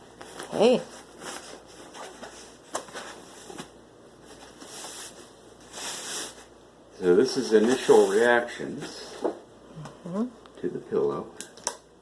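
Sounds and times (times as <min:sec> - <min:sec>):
fabric and packaging rustling: 0:00.0 - 0:09.4.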